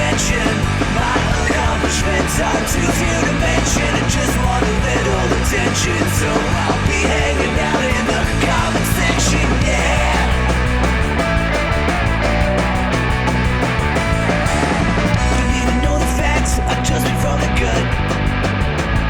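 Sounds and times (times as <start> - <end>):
punk rock band playing: 0.0 - 19.0.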